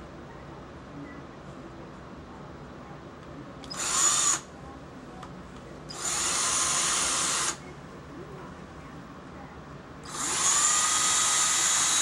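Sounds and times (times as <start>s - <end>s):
electric drill driving screws: 3.7s - 4.4s, 5.9s - 7.6s, 10.1s - 12.0s.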